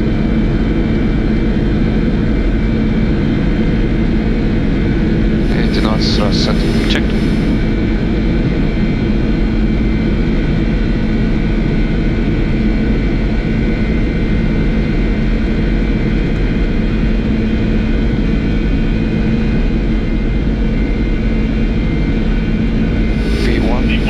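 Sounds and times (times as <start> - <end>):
loud jet engine noise: 5.4 - 7.8, 23.2 - 24.0.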